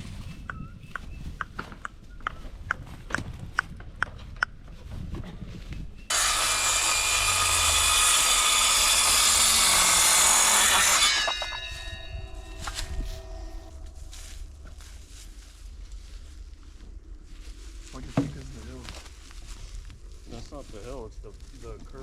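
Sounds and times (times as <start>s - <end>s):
power saw cutting wood: 6.1s - 13.0s
ringing tones of tool winding down: 6.1s - 14.0s.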